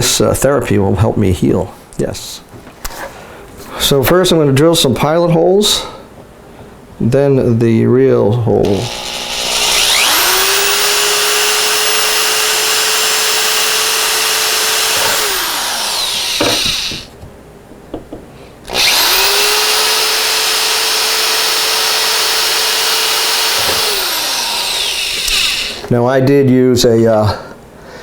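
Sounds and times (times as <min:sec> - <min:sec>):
electric drill boring: 0:08.6 - 0:17.1, 0:18.7 - 0:25.9.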